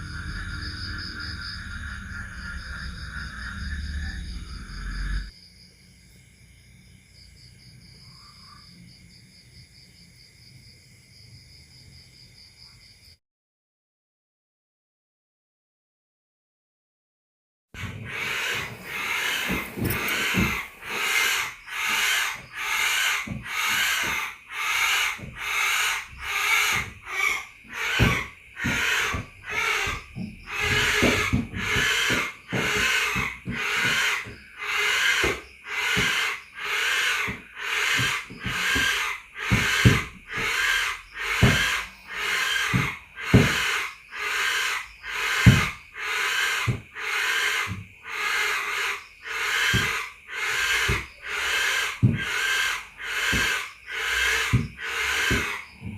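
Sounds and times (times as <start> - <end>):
animal hissing call: 18.0 - 28.1.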